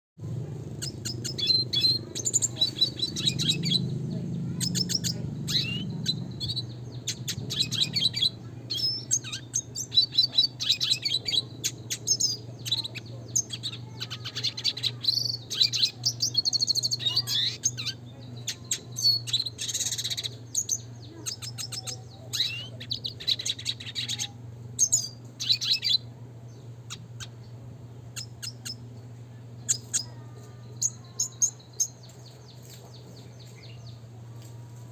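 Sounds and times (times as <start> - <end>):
faint low hum: 0.2 - 34.9
bird singing chirps and trills: 0.4 - 34.9.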